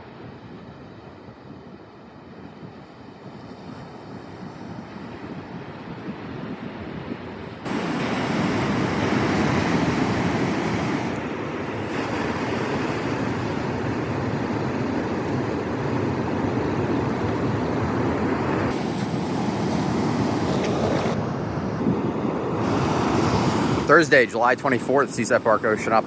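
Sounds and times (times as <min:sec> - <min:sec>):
wind on microphone: 0:04.1 - 0:26.0
ocean surf breaking: 0:07.6 - 0:26.0.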